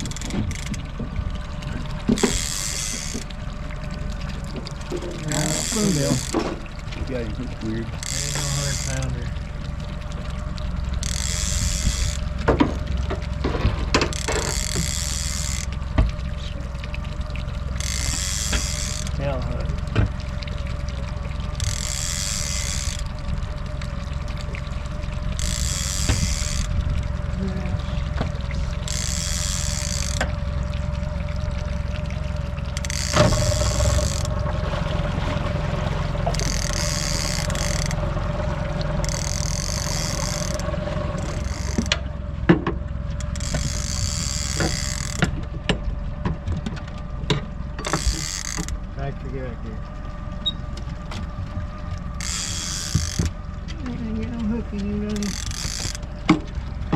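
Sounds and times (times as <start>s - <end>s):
fishing reel cranking: 0.0s - 0.9s, 2.0s - 3.4s, 4.8s - 6.4s, 7.7s - 9.4s, 10.9s - 12.3s, 14.0s - 15.8s, 17.7s - 19.2s, 21.4s - 23.2s, 25.2s - 26.8s, 28.6s - 30.4s, 32.7s - 34.4s, 36.2s - 38.2s, 38.9s - 42.0s, 43.1s - 45.3s, 47.8s - 48.8s, 52.1s - 53.4s, 55.1s - 56.2s
knocks and clicks: 0.0s - 1.2s, 25.4s - 26.8s, 32.7s - 34.4s, 52.2s - 53.8s
boat motor rumbling: 0.0s - 56.9s.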